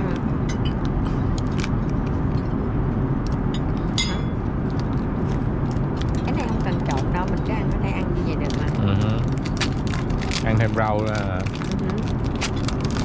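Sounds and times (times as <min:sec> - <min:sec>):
airplane cabin roar: 0:00.0 - 0:13.0
tableware clicking: 0:03.6 - 0:04.4.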